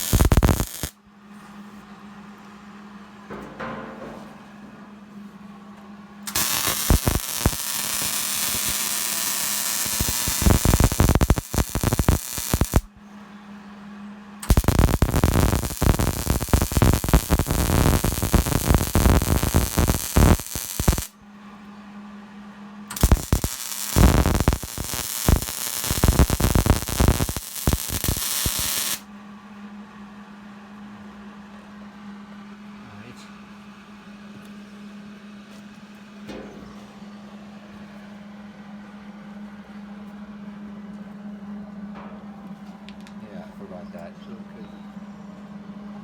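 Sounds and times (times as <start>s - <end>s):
welding arc crackling: 0.0s - 1.0s, 6.3s - 12.9s, 14.5s - 21.1s, 22.9s - 29.0s
steady low hum: 0.0s - 46.0s.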